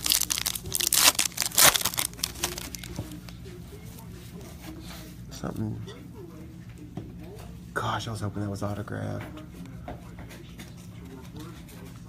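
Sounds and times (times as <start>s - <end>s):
wrapper tearing: 0.0s - 3.0s
wrapper crinkling and rustling: 0.0s - 3.3s.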